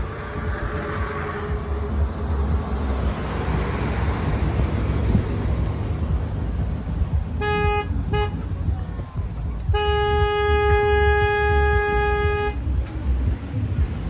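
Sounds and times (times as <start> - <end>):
road traffic rumble: 0.0 - 14.0
car horn tooting: 7.4 - 8.5, 9.7 - 12.7.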